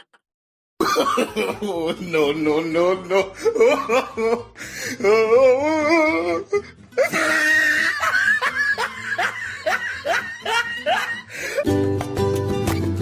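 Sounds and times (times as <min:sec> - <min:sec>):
person laughing: 0:00.8 - 0:02.4, 0:03.0 - 0:11.7
music: 0:00.8 - 0:13.0.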